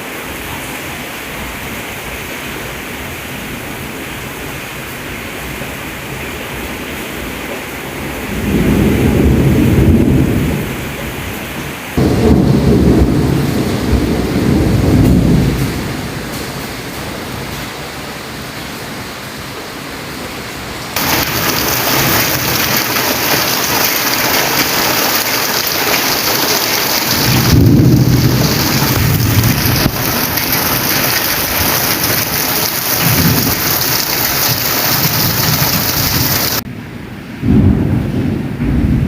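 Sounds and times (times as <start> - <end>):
heavy rain pouring: 0.0 - 39.0
thunder rumbling: 7.9 - 17.8, 21.0 - 39.0.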